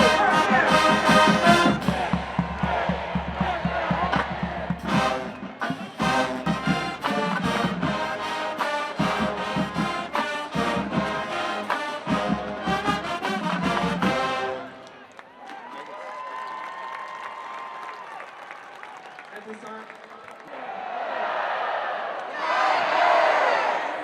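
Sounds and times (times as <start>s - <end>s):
drum hits: 0.0s - 14.3s
marching band brass fanfare: 0.0s - 15.2s.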